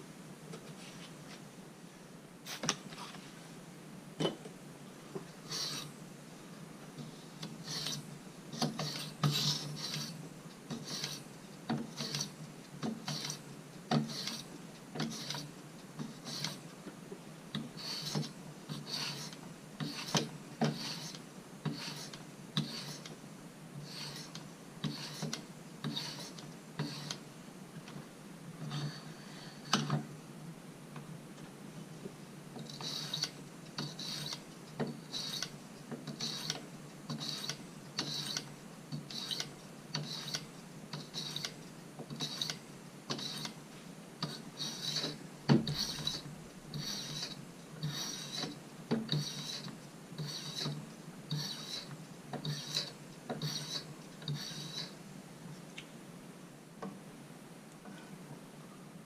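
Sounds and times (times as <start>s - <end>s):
knife blade rasping on stone: 5.5s - 5.9s, 7.6s - 8.0s, 8.6s - 11.2s, 11.9s - 12.4s, 13.0s - 13.4s, 14.0s - 15.5s, 16.1s - 16.6s, 17.8s - 23.1s, 23.8s - 27.2s, 32.7s - 34.4s, 35.0s - 35.5s, 36.1s - 43.6s, 44.2s - 48.5s, 49.1s - 54.9s.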